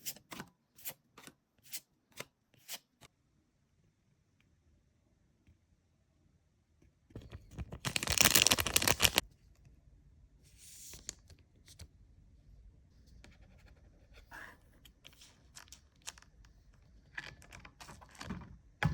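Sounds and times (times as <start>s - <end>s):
wrapper and cards rustling: 7.2s - 9.2s
wrapper torn with crinkly rip: 7.2s - 9.2s.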